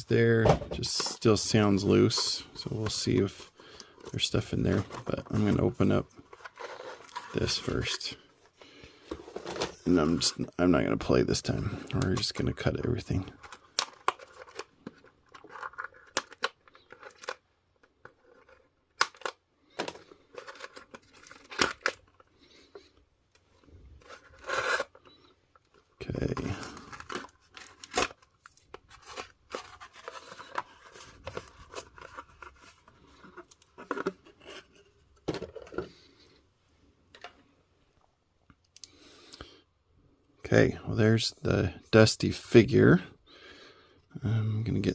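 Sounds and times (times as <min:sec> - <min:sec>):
toy packaging rustling: 0:00.8 - 0:36.1
cardboard and plastic crinkling: 0:26.0 - 0:35.9.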